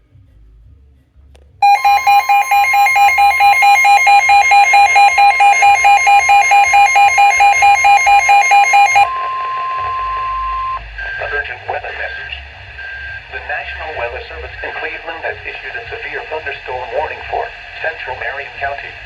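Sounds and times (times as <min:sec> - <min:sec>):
alert alarm beeping rapidly: 0:01.6 - 0:09.1
steady warning alarm tone: 0:01.6 - 0:11.3.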